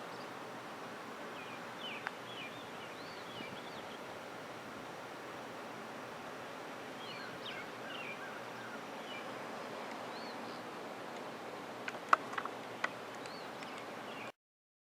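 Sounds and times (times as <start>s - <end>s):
bird chirps: 1.4s - 4.1s, 7.0s - 9.3s, 10.0s - 10.7s, 12.8s - 14.3s.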